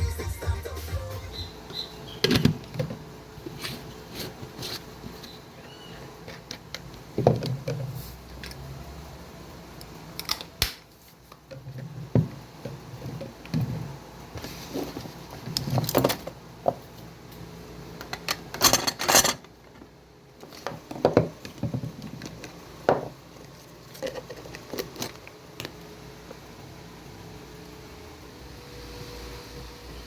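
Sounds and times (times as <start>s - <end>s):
clicks and clatter of handling: 23.4s - 25.8s.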